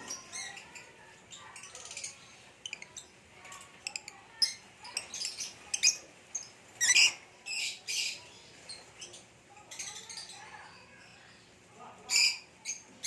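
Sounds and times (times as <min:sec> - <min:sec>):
birds chirping and squawking: 0:00.0 - 0:11.5, 0:12.1 - 0:13.0.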